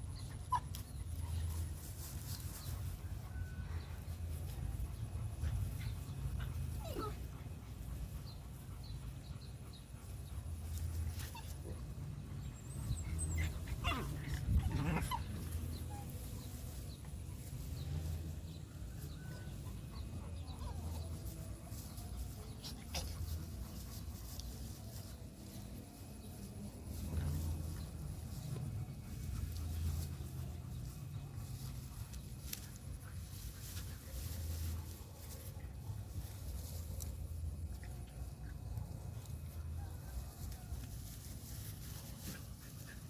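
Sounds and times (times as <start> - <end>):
dog whining: 6.8 - 7.2.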